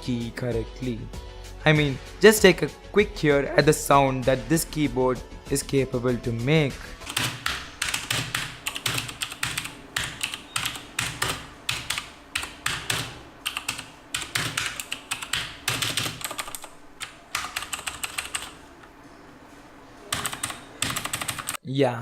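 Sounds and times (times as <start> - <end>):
mechanical keyboard typing: 7.0 - 18.6, 20.1 - 21.6.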